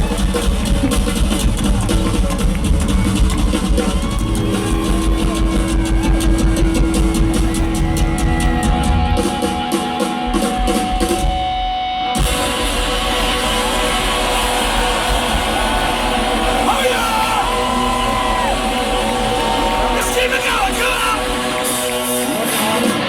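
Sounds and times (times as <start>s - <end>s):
live rock band: 0.0s - 23.0s
rapid drum hits: 12.2s - 21.4s.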